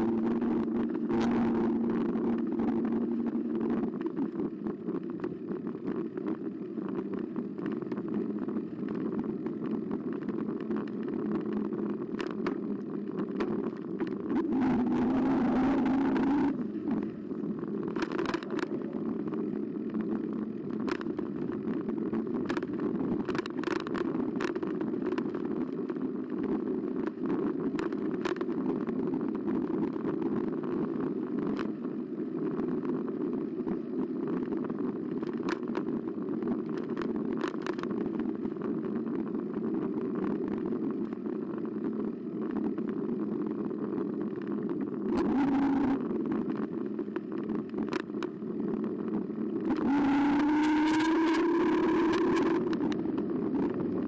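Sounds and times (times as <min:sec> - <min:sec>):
bike tyres and motor rumble: 0:00.0 - 0:54.0.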